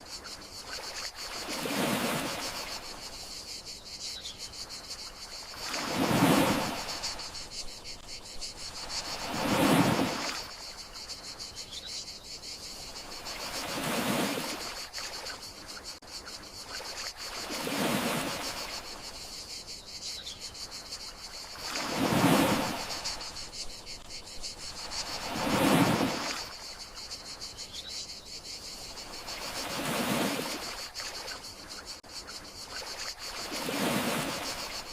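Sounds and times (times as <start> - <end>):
crickets chirring: 0.0 - 34.9
sea waves washing ashore: 0.6 - 3.3, 5.0 - 11.2, 12.9 - 15.5, 16.7 - 19.3, 21.0 - 27.1, 28.9 - 31.4, 32.7 - 34.9.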